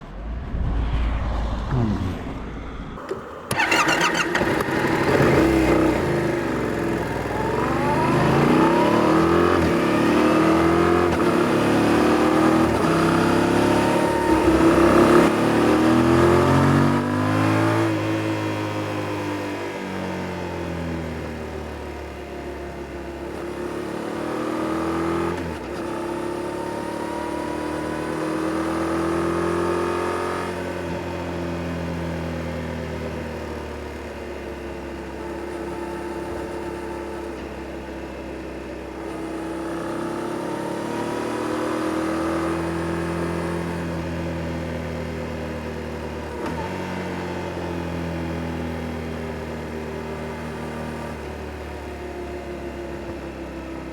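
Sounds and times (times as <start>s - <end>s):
gear change: 0.0s - 4.8s
motorcycle engine revving: 1.7s - 17.5s.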